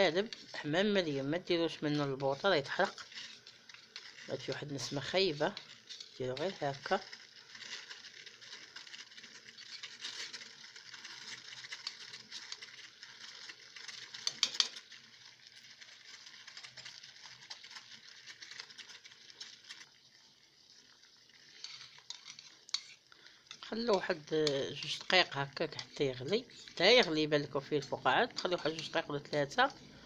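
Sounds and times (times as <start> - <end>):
garlic sizzling in oil: 0.0 - 30.0
oil bubbling: 0.0 - 30.0.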